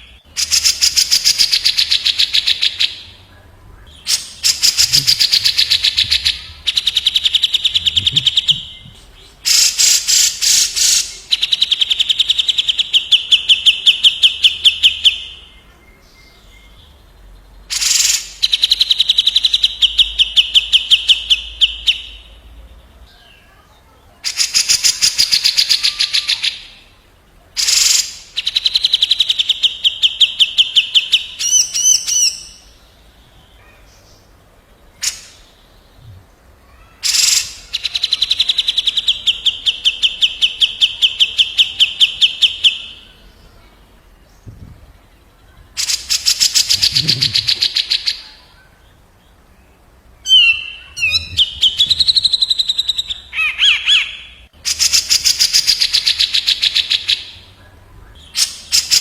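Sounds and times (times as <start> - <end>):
bird warbled phrase: 0.4 - 11.6, 45.6 - 48.9, 50.2 - 54.4
bulbuls harsh rattling calls: 4.0 - 11.2, 45.8 - 48.5.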